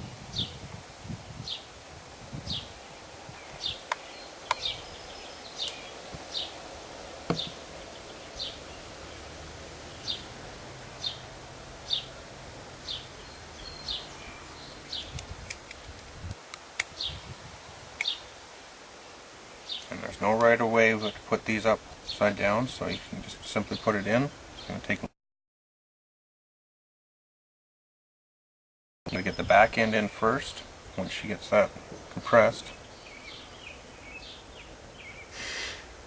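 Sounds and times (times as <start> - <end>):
faint background hiss: 0.0 - 25.1, 29.1 - 36.0
small bird chirping: 3.4 - 6.6, 12.8 - 15.2.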